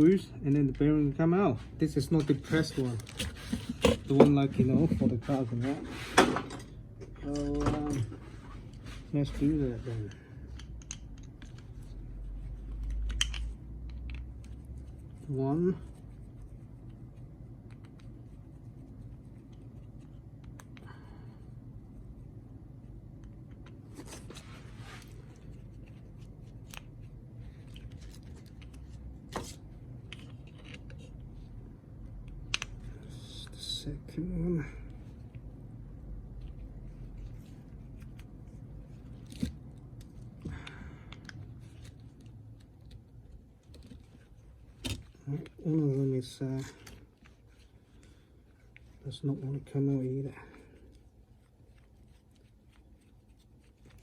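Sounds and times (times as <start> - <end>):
low steady hum: 0.0 - 54.0.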